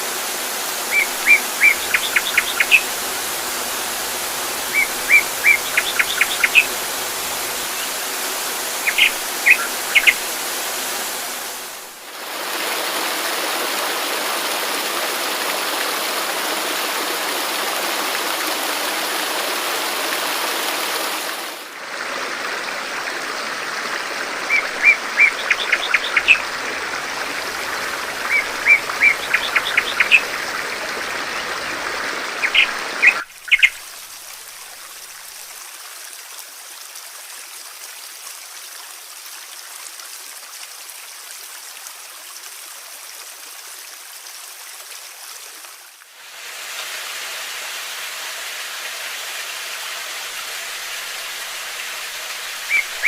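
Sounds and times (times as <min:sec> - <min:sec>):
rushing water: 0:00.0 - 0:53.0
small birds chirping: 0:00.8 - 0:11.6, 0:24.5 - 0:33.8, 0:52.3 - 0:53.0.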